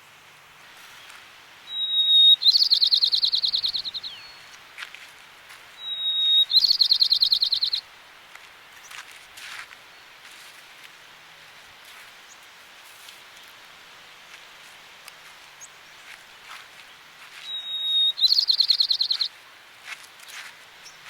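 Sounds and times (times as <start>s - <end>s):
sparrow whistle and trill: 1.7s - 4.5s, 5.8s - 7.8s, 17.4s - 19.3s.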